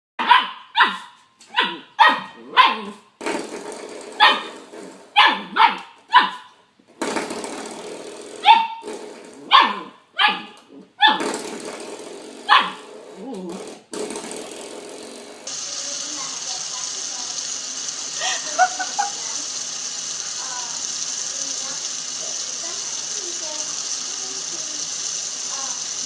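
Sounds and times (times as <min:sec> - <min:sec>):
dog barking: 0:00.2 - 0:03.0, 0:04.2 - 0:04.6, 0:05.2 - 0:06.5, 0:08.4 - 0:08.8, 0:09.5 - 0:11.2, 0:12.5 - 0:12.8.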